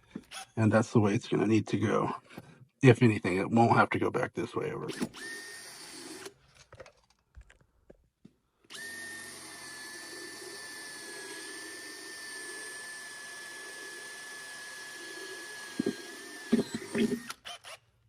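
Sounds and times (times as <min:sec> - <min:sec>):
power drill whining: 0:00.0 - 0:00.6, 0:04.9 - 0:06.4, 0:08.6 - 0:18.0.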